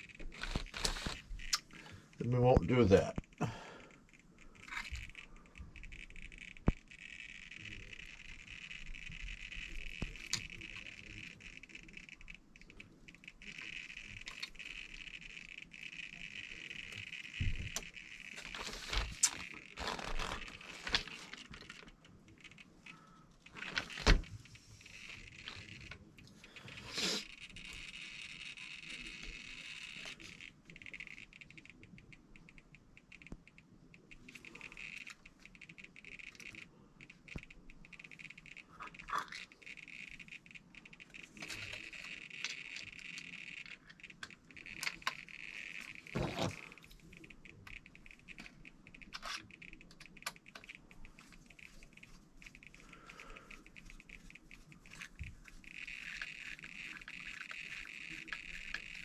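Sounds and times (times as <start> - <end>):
faint high-pitched whine: 0.0 - 59.0
small plastic and metal parts rattling: 4.1 - 12.4, 37.3 - 59.0.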